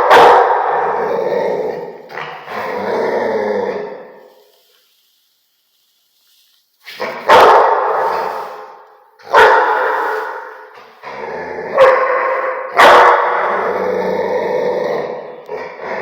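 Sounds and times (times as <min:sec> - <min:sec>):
dog barking deeply: 0:00.0 - 0:01.0, 0:07.0 - 0:08.2, 0:09.2 - 0:10.7, 0:11.7 - 0:13.6.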